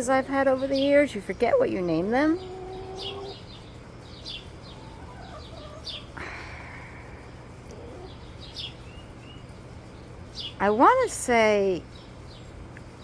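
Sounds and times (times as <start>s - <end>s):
hens clucking: 1.7s - 6.2s, 7.6s - 8.9s
harsh raspy hen sound: 2.2s - 3.5s, 4.7s - 6.1s.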